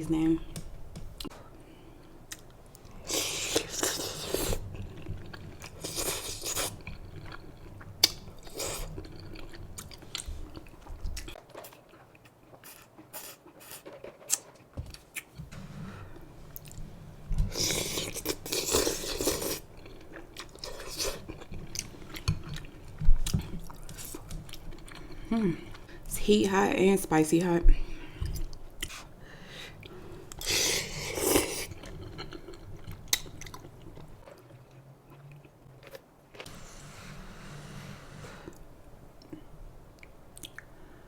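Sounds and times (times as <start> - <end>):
person chewing crunchy food: 2.3 - 15.4, 17.4 - 25.9, 29.8 - 36.5.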